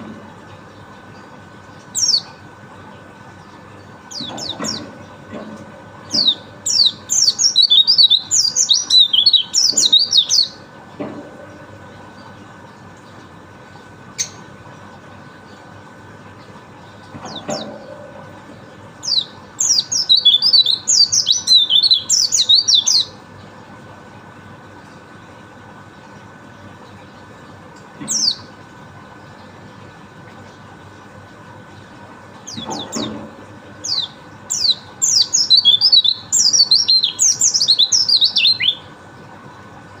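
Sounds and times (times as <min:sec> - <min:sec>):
faint steady hum: 0:00.0 - 0:40.0
bird warbling song: 0:00.7 - 0:02.4, 0:03.3 - 0:10.6, 0:16.4 - 0:23.2, 0:28.0 - 0:28.5, 0:31.8 - 0:38.9
bird singing high sharp notes: 0:33.9 - 0:38.9.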